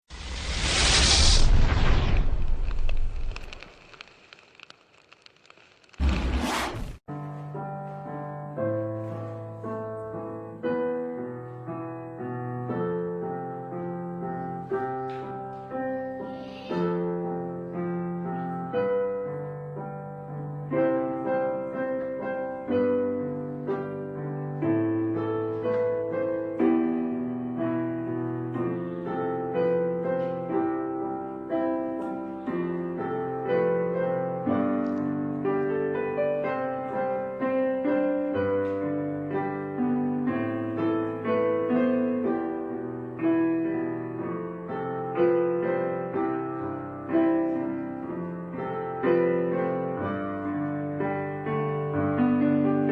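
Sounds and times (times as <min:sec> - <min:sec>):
solo piano music: 0:07.0 - 0:52.9.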